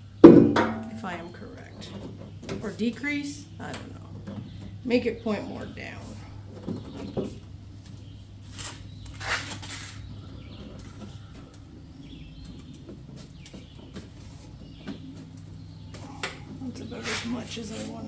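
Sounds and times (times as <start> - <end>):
rubber mallet knocking on chute: 0.2 - 1.4.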